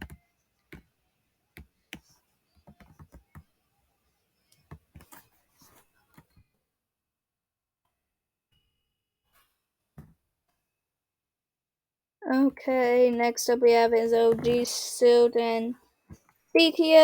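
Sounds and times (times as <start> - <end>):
faint clicks and taps: 0.0 - 0.9, 1.5 - 3.5, 4.5 - 6.4.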